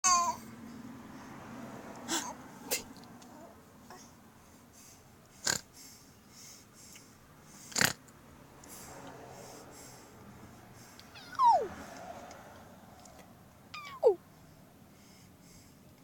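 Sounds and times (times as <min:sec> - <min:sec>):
baby breathing noisily: 0:08.6 - 0:12.2.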